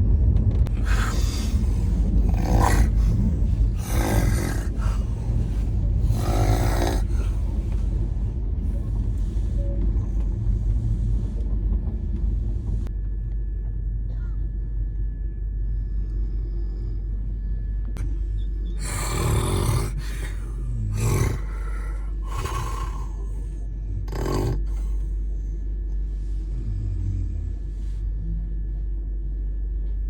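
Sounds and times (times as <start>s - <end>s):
train rumbling: 0.0s - 14.3s
person snoring: 0.7s - 9.6s, 18.8s - 25.1s, 26.2s - 28.1s.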